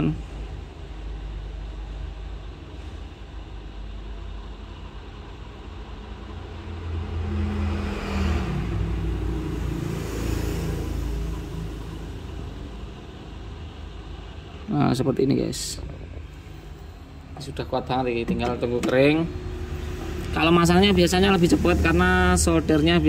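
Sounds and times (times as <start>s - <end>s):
hot-air rework station hum and hiss: 0.0s - 7.0s, 9.2s - 23.0s
motor vehicle passing: 6.2s - 14.6s, 15.8s - 23.0s.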